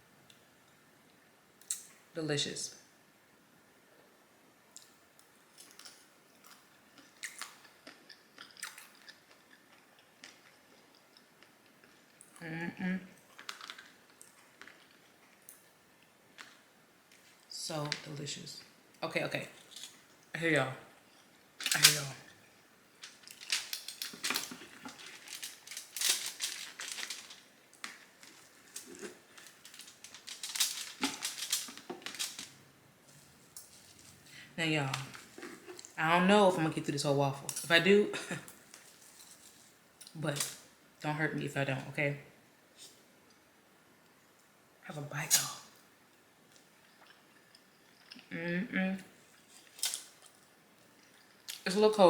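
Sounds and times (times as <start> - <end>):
person chewing food: 5.6 - 12.4, 23.0 - 32.5.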